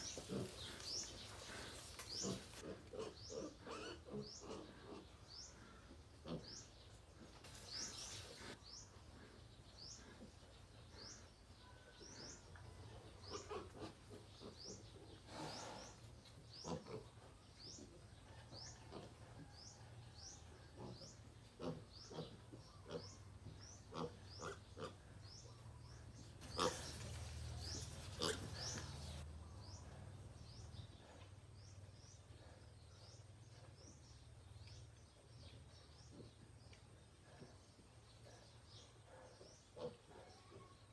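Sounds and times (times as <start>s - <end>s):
rustle of movement: 0.0s - 2.7s, 26.4s - 29.2s
pig grunts: 0.0s - 8.6s, 13.0s - 17.8s, 20.6s - 25.5s, 26.4s - 29.2s.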